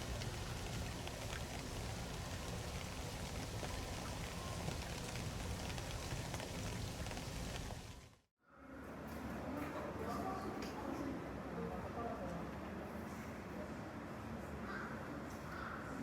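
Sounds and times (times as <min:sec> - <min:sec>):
heavy rain: 0:00.0 - 0:08.3
raindrops striking surfaces: 0:00.0 - 0:08.3.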